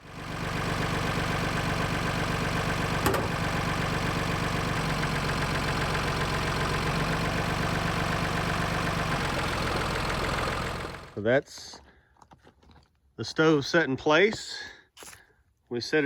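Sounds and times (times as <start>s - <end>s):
tractor engine idling: 0.0s - 11.2s.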